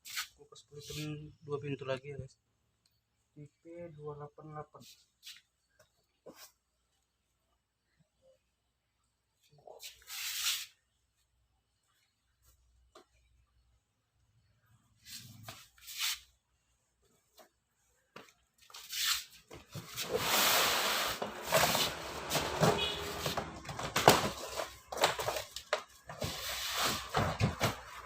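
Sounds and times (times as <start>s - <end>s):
packaging rustling and crackling: 21.2s - 27.9s.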